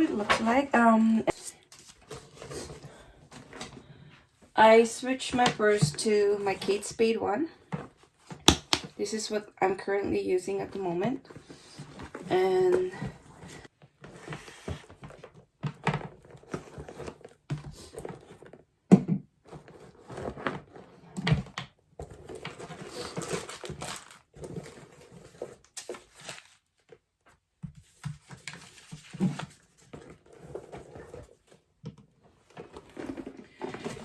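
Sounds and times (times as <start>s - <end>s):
handbag items knocking and rustling: 0.0s - 1.2s, 32.5s - 34.0s.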